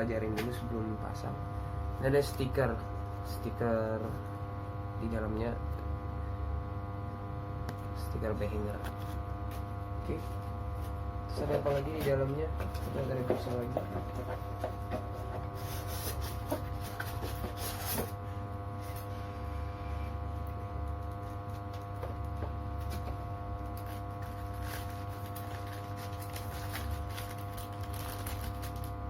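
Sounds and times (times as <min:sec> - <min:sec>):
steady electrical hum: 0:00.0 - 0:29.0
packaging rustling and scraping: 0:08.7 - 0:18.2, 0:20.9 - 0:29.0.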